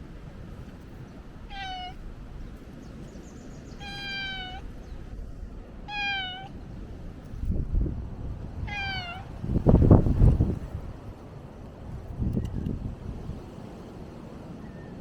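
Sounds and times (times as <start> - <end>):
cat meowing: 1.4 - 2.0, 3.8 - 4.7, 5.8 - 6.6, 8.6 - 9.3.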